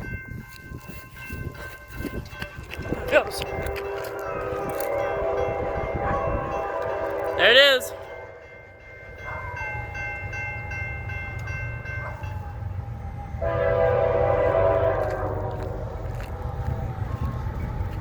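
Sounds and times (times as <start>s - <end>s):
crossing signal bell ringing: 0.0s - 18.0s
low rumble of train: 0.0s - 18.0s
locomotive horn: 2.8s - 8.7s, 13.4s - 16.6s.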